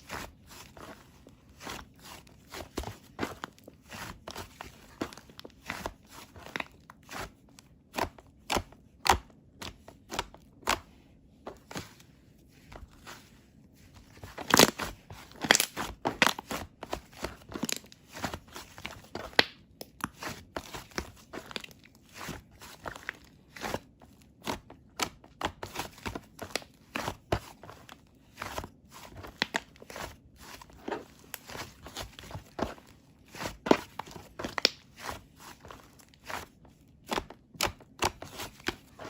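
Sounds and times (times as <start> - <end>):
close-up crunching and crackling: 14.2 - 22.0, 29.1 - 39.0.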